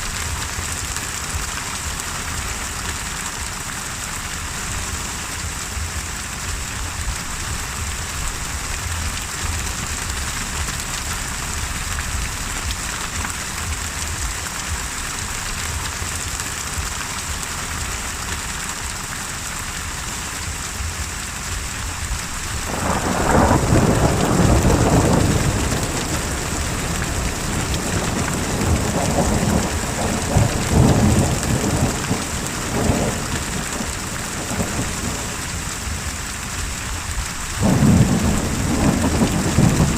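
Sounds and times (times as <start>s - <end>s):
heavy rain falling: 0.0s - 39.9s
thunder rumbling: 22.0s - 39.9s.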